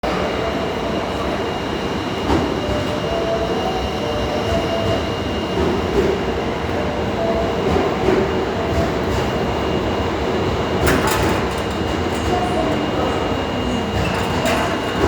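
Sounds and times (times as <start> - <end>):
subway train rumble: 0.0 - 15.0.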